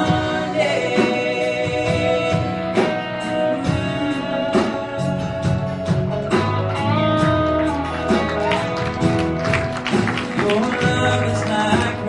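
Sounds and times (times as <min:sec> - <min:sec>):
country band playing: 0:00.0 - 0:12.0.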